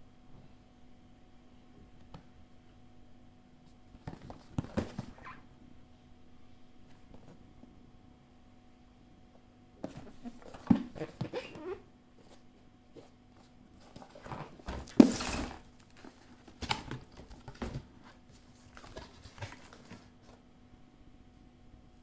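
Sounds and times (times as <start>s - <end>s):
faint steady hum: 0.0s - 22.0s
packaging knocks and rustling: 13.8s - 20.2s.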